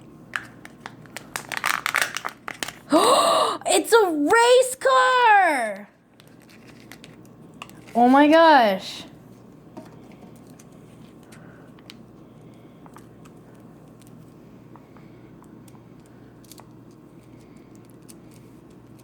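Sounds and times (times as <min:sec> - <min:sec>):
low room hum: 0:00.0 - 0:19.0
wrapping rustling: 0:00.6 - 0:02.9, 0:06.2 - 0:08.1.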